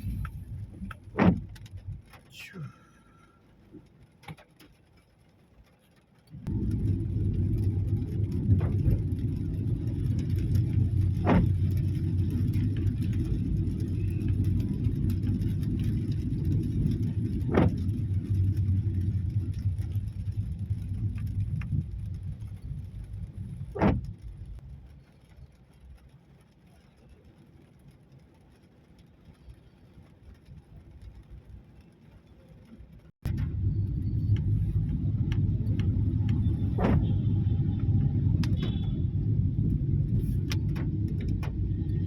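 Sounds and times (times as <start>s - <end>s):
windscreen wiper swishes: 0.0s - 2.4s, 6.3s - 24.6s, 33.0s - 42.0s
car driving on wet road: 0.0s - 42.0s.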